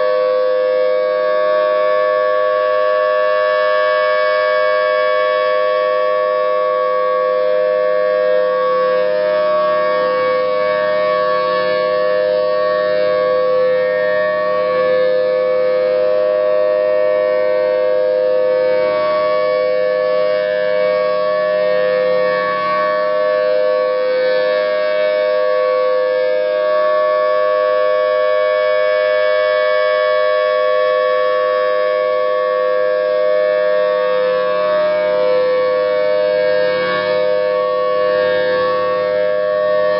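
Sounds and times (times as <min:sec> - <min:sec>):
dual-tone warning siren: 0:00.0 - 0:39.9.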